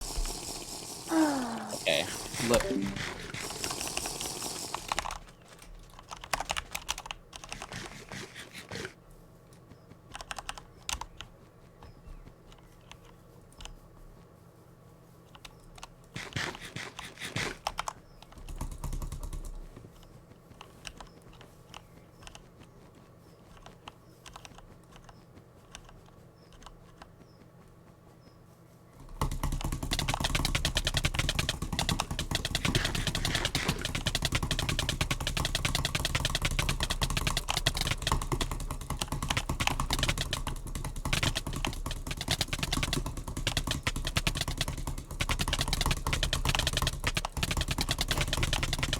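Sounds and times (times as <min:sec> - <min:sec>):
fidget toy clicking: 0:29.4 - 0:48.9.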